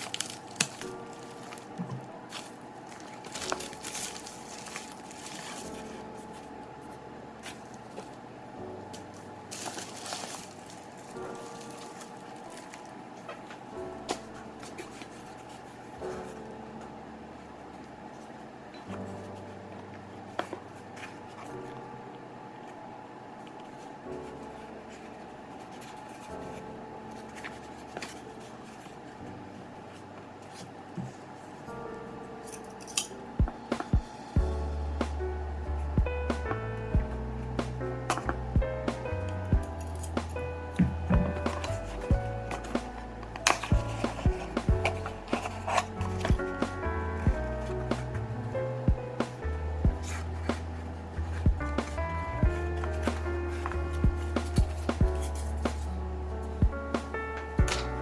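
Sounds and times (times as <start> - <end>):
packaging rustling: 0.0 - 8.2, 8.9 - 16.5, 39.9 - 48.1, 49.1 - 58.0
soft background music chords: 0.0 - 18.2, 23.9 - 58.0.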